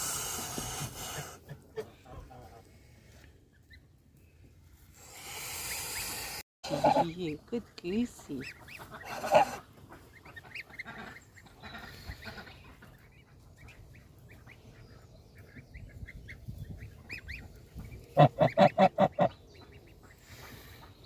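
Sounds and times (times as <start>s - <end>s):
goslings peeping: 0.0s - 4.0s, 5.0s - 21.0s
goose honking: 8.6s - 12.9s.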